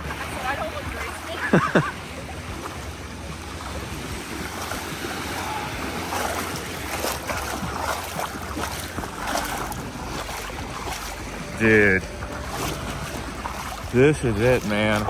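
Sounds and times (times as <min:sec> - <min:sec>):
waves washing onto sand: 0:00.0 - 0:15.0
wind buffeting microphone: 0:00.0 - 0:15.0.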